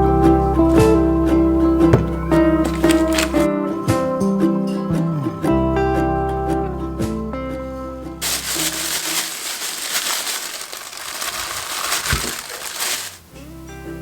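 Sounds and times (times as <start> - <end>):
food preparation crackles: 1.9 - 3.5, 8.2 - 13.3.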